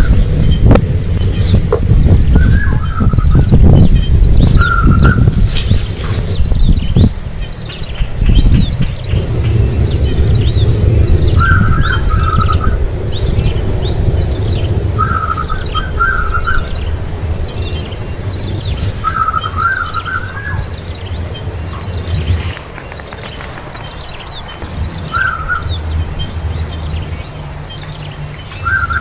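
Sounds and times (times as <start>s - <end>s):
loud low rumble: 0.0s - 22.6s
warbled bird call: 0.0s - 27.4s, 28.4s - 29.0s
birds chirping: 0.0s - 29.0s.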